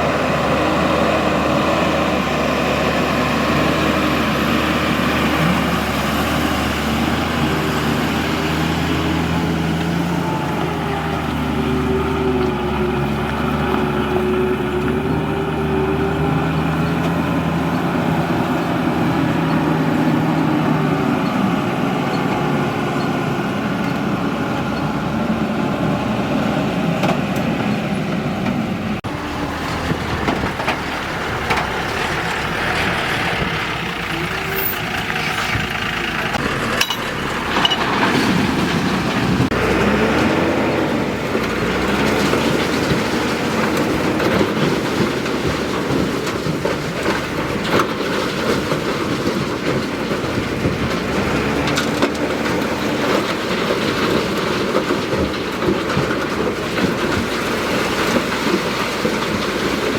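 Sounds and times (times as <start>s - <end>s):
diesel engine under load: 0.0s - 59.9s
metallic clanks and knocks: 29.0s - 39.9s.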